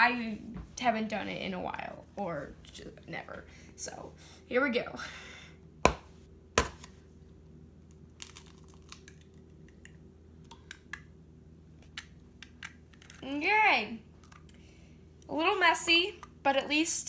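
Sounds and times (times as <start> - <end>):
eggshell crinkling: 7.8 - 11.1.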